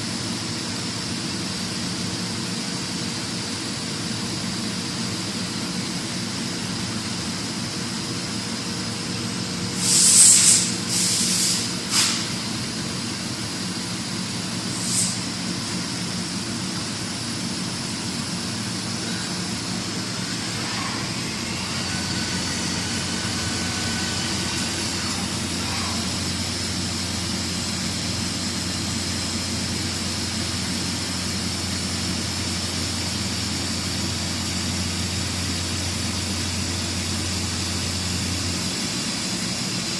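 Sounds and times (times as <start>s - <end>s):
boring mill machine hum: 0.0s - 39.9s
short loud hisses: 9.7s - 12.4s, 14.7s - 15.4s
motor gliding tones: 20.1s - 26.2s.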